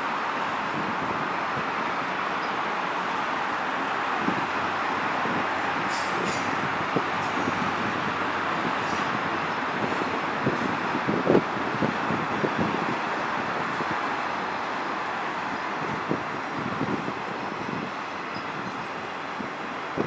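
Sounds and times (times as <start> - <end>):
freight train rumbling past: 3.8 - 18.6
high-pitched wheel squeals: 5.9 - 7.6
train cars clanking: 5.9 - 7.9.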